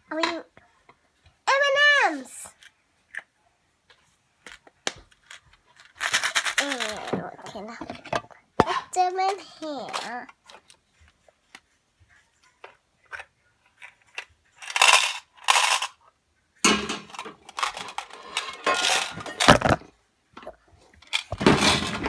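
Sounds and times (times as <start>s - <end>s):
candies rattling in plastic container: 5.1s - 8.2s, 13.8s - 16.0s, 17.1s - 19.8s.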